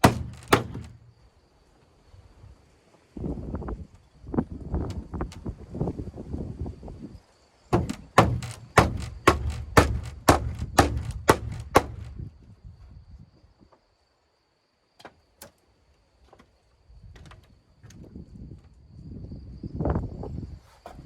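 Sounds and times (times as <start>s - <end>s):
knocks on wood: 0.0s - 1.0s, 7.7s - 12.2s.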